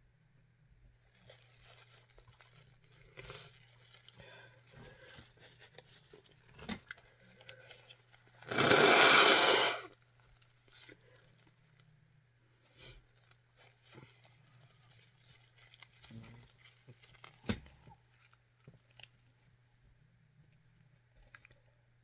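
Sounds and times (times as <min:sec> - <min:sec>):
harsh crunching tearing noise: 0:01.1 - 0:10.0.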